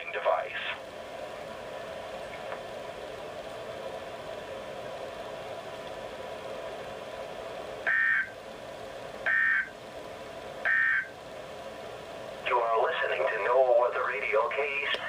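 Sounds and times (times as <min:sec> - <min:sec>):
faint hum: 0:00.0 - 0:15.0
radio receiver hiss: 0:00.0 - 0:15.0
electronic data bursts: 0:07.9 - 0:08.4, 0:09.3 - 0:09.7, 0:10.7 - 0:11.2.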